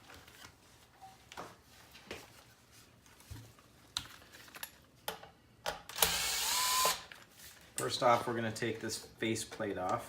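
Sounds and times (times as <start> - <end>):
cordless screwdriver whirring: 5.9 - 7.1.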